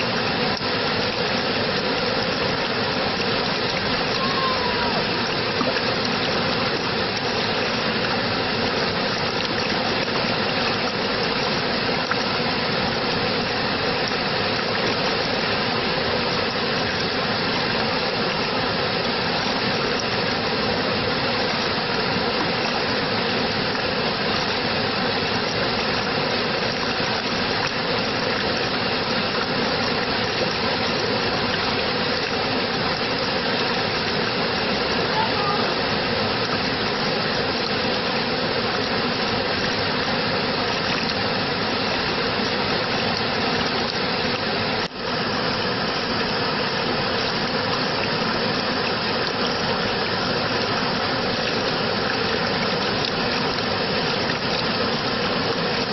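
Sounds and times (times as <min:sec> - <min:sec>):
rushing water: 0:00.0 - 0:55.9.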